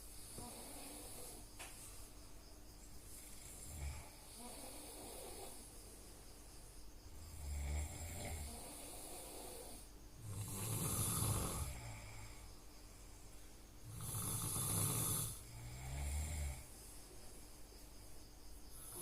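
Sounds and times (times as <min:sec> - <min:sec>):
person snoring: 0:00.3 - 0:01.4, 0:03.2 - 0:05.6, 0:07.3 - 0:12.5, 0:13.8 - 0:16.7, 0:18.8 - 0:19.0.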